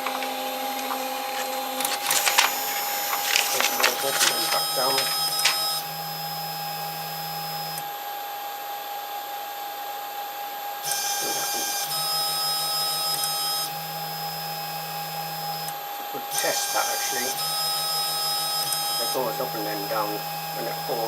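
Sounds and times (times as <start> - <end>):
printer stepper motors humming: 0.0 - 5.8.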